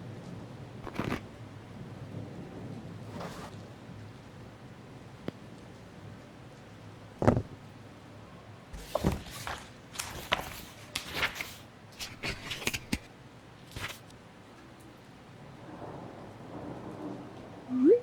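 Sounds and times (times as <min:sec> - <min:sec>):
sharp thud: 0:07.2 - 0:07.6
taps clicks and rustles: 0:07.2 - 0:07.6, 0:08.8 - 0:13.1.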